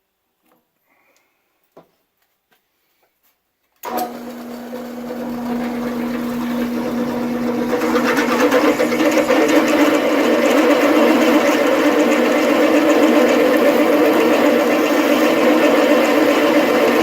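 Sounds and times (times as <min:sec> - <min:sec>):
drill press motor humming: 0:03.8 - 0:17.0
drill bit drilling through steel: 0:04.4 - 0:17.0.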